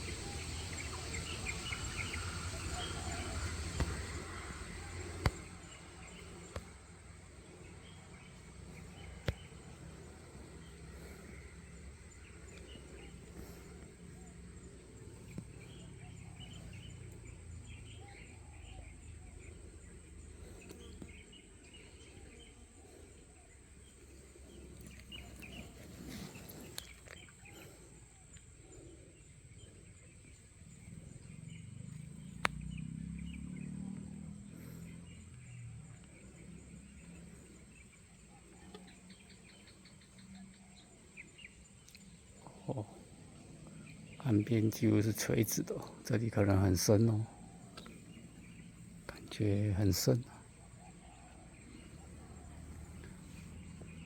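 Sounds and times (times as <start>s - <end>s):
bird chirps: 0.0s - 54.0s
low uneven rumble: 0.0s - 54.0s.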